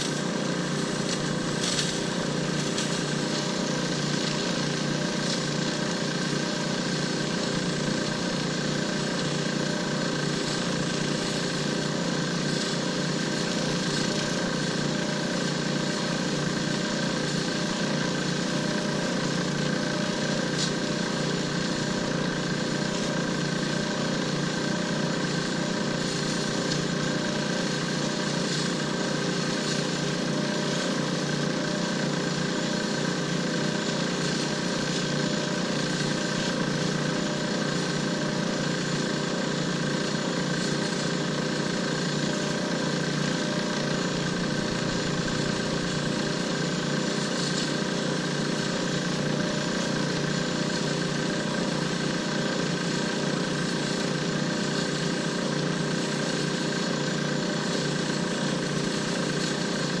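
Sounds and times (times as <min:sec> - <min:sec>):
lathe motor humming with whine: 0:00.0 - 1:00.0.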